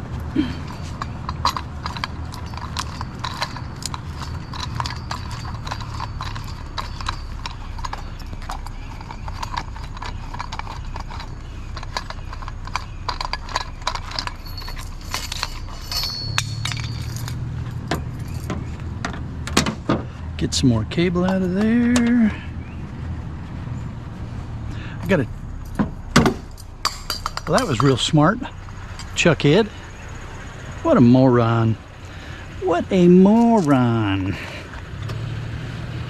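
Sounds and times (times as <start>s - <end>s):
irregular clicking and clattering: 0.0s - 20.2s, 25.0s - 30.6s
steady low rumble: 0.0s - 36.0s.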